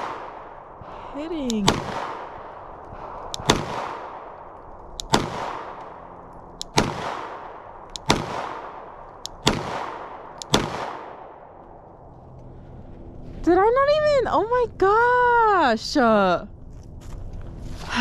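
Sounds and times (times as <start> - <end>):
pistol shots with echo: 0.0 - 0.7, 1.6 - 2.6, 3.4 - 4.4, 5.0 - 6.0, 6.6 - 11.5.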